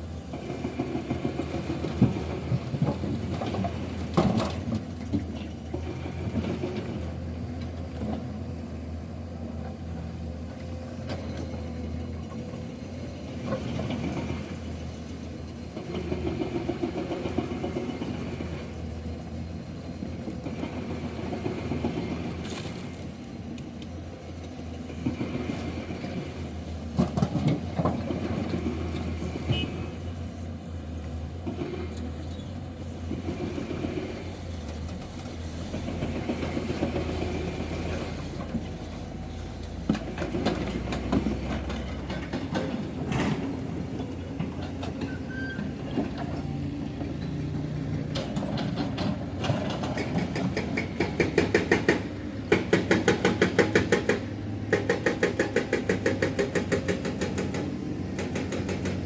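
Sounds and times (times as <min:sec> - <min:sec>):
knocks and clatter: 0:48.0 - 0:59.0.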